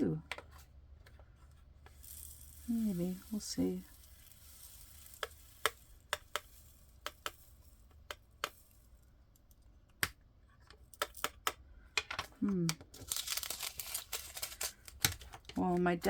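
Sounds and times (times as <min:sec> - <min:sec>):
plastic containers clicking: 0:10.8 - 0:16.0.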